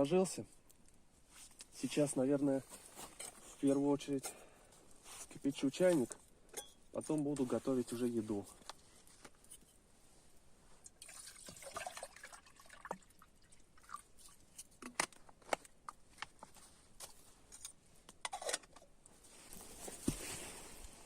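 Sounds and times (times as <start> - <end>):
water poured into kettle: 10.9 - 14.4.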